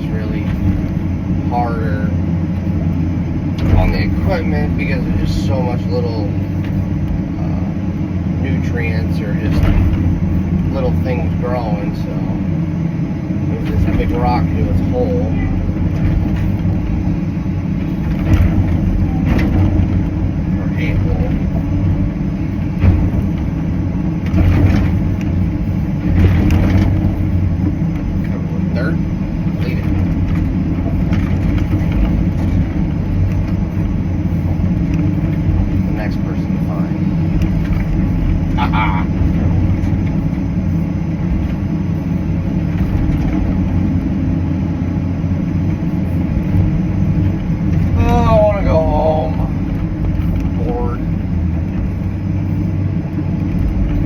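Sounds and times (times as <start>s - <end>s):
excavator diesel engine running: 0.0s - 54.0s
short knocks: 9.4s - 11.1s, 15.5s - 35.9s.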